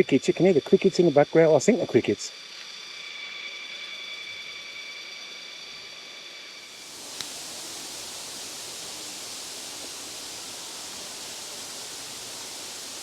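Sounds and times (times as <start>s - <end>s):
crickets droning: 0.0s - 13.0s
waterfall rushing: 6.7s - 13.0s.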